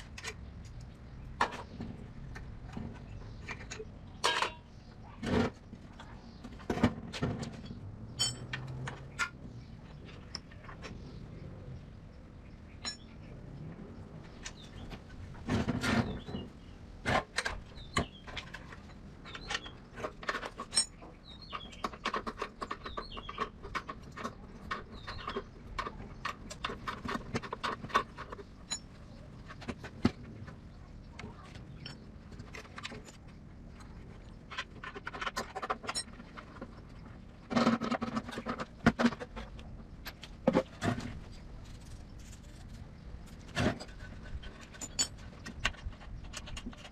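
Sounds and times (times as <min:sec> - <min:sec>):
birds chirping faintly: 0:00.2 - 0:46.9
metal tools clinking: 0:07.5 - 0:09.4, 0:20.2 - 0:29.0, 0:41.6 - 0:46.9.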